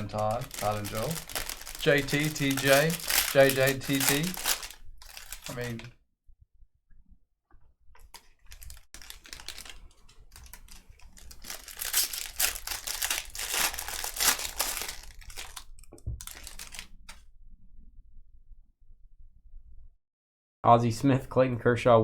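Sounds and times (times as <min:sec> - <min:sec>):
plastic wrapping crinkling and tearing: 0:00.0 - 0:05.9, 0:08.0 - 0:17.2.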